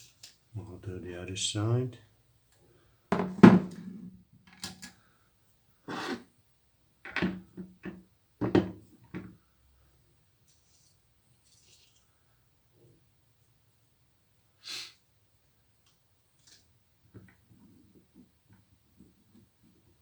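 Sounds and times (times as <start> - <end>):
objects knocking on workbench: 3.1 - 4.1, 7.1 - 9.3.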